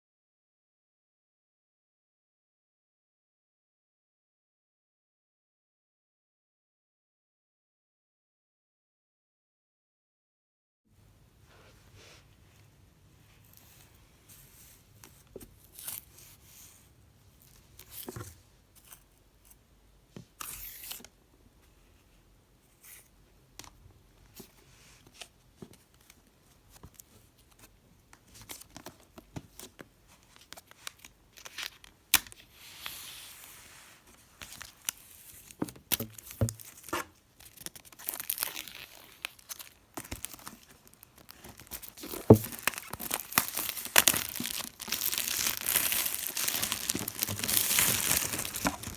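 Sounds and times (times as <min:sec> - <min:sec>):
plastic wrap tearing and crinkling: 0:35.9 - 0:48.9.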